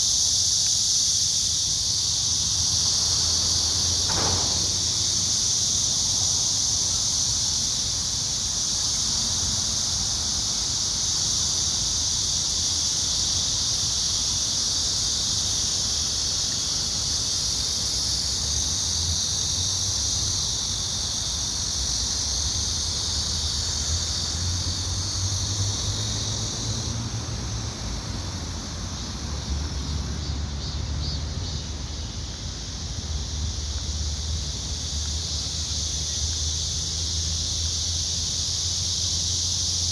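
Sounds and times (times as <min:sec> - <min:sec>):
insects singing: 0:28.3 - 0:39.9.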